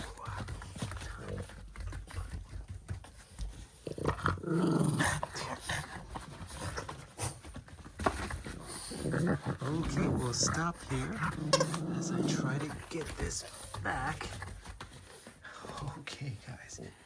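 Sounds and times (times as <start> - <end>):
dog growling: 3.4 - 15.0.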